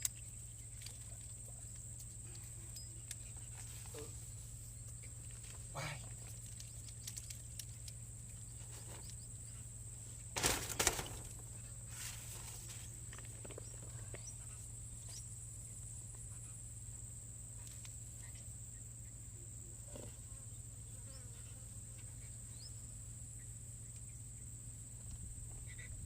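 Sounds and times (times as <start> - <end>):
rustle: 0.0 - 26.0
small clicks: 6.3 - 9.2.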